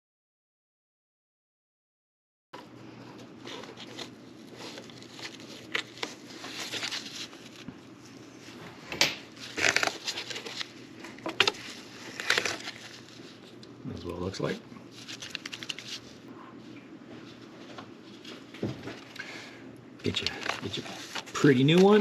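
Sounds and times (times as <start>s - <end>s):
low steady hum: 2.6s - 22.0s
plastic parts clicking and crinkling: 9.0s - 12.9s, 20.0s - 22.0s.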